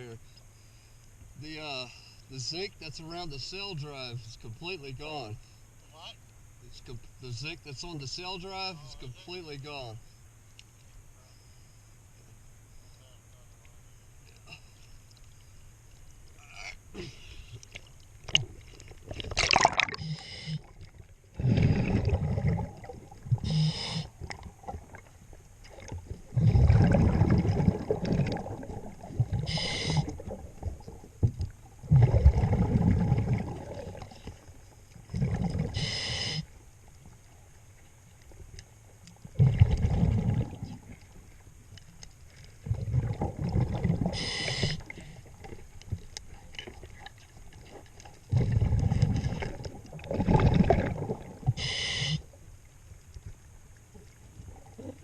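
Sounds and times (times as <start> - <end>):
exhaust bubbles rumbling: 18.3 - 36.0, 39.3 - 41.3, 42.6 - 45.6, 48.3 - 51.8
regulator breathing hiss: 20.0 - 20.7, 23.4 - 24.2, 29.4 - 30.2, 35.7 - 36.6, 44.1 - 45.3, 51.5 - 52.4.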